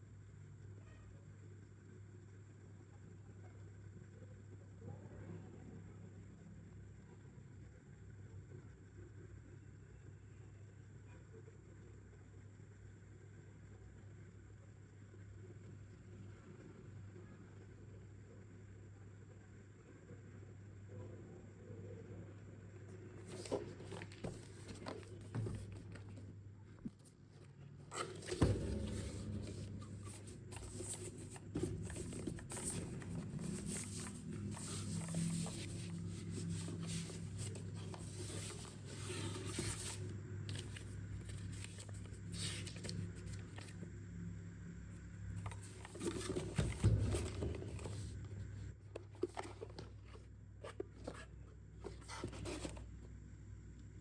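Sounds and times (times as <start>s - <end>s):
steady low hum: 21.4s - 54.0s
packaging rustling: 27.9s - 43.7s, 45.4s - 48.1s.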